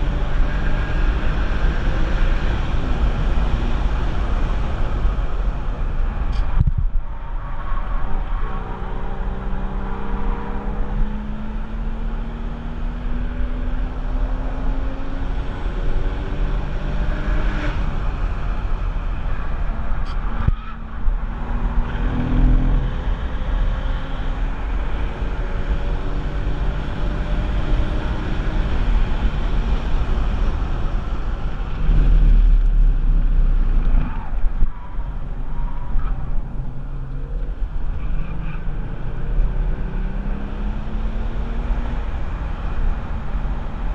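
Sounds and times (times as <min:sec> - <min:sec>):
wind and road noise rumble: 0:00.0 - 0:43.9
car engine accelerating hard: 0:08.1 - 0:34.6, 0:35.7 - 0:43.9.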